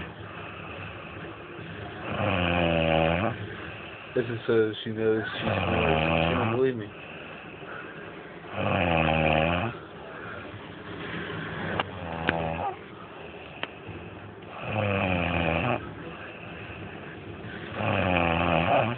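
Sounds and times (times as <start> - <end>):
woman snoring: 2.0 - 3.4, 5.3 - 6.7, 8.5 - 9.8, 11.9 - 12.8, 14.5 - 15.9, 17.6 - 18.9.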